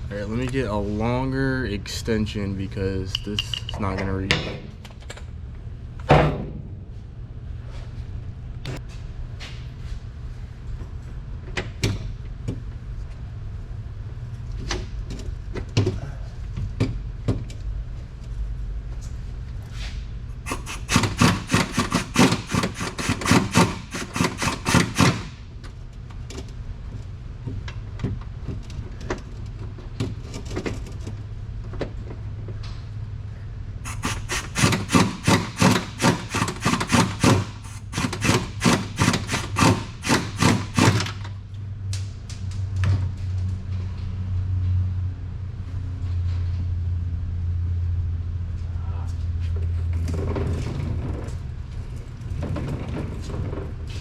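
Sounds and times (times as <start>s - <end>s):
steady low hum: 0.0s - 54.0s
tools clinking: 3.1s - 4.0s
socket ratchet ratcheting: 20.5s - 25.3s, 33.9s - 41.2s.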